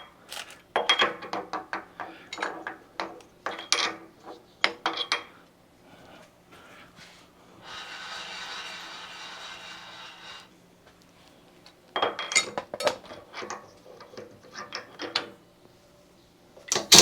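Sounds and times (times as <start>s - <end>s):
air hissing: 7.6s - 10.5s.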